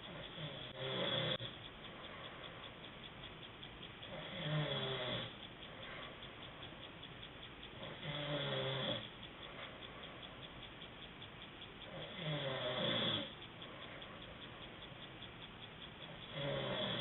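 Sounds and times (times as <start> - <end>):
man snoring: 0.1 - 1.5, 4.1 - 5.3, 7.8 - 9.0, 11.9 - 13.3, 16.3 - 17.0.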